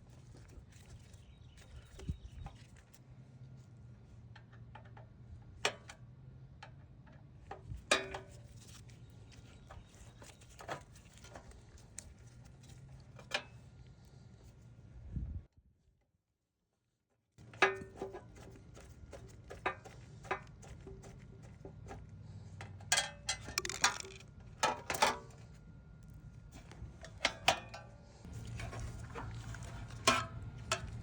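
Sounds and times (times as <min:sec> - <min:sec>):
small hard parts clattering: 0:22.9 - 0:24.3.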